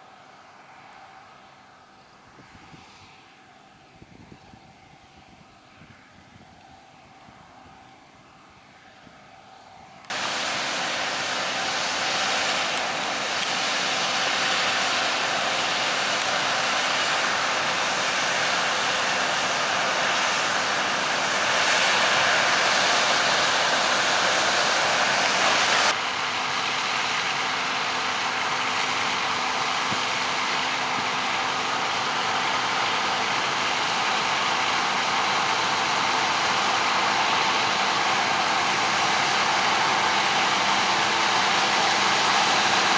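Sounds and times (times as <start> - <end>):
diesel machinery running: 10.1 - 42.9.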